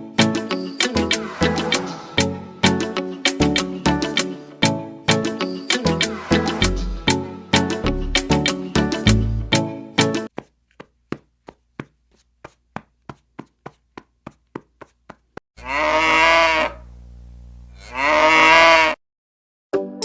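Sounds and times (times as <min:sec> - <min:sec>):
cow mooing: 0:15.6 - 0:16.8, 0:17.8 - 0:19.0.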